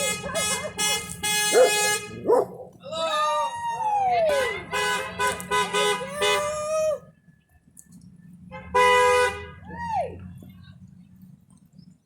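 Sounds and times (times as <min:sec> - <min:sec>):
car horns honking: 0:00.0 - 0:02.4, 0:04.3 - 0:06.6, 0:08.4 - 0:09.7.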